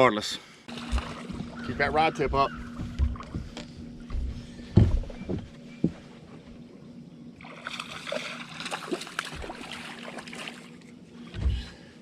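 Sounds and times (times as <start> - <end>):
water splashing and sloshing: 0.7 - 5.0, 7.4 - 11.9.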